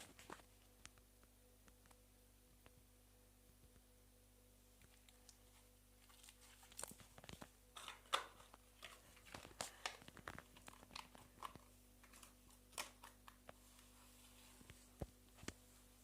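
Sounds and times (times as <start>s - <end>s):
slime crackling and popping: 6.0s - 13.4s.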